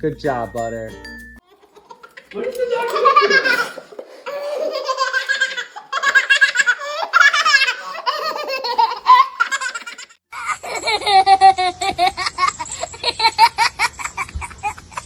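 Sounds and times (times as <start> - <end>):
baby laughing: 1.4 - 15.0.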